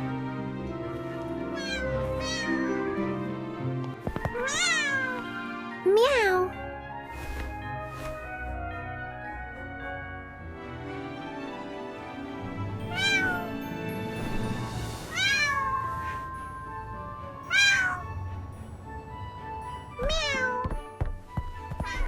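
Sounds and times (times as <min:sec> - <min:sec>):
soft background music: 0:00.0 - 0:22.0
kitten meowing: 0:01.6 - 0:02.8, 0:04.3 - 0:05.3, 0:12.9 - 0:13.6, 0:15.1 - 0:16.6, 0:17.5 - 0:18.2, 0:20.0 - 0:20.7.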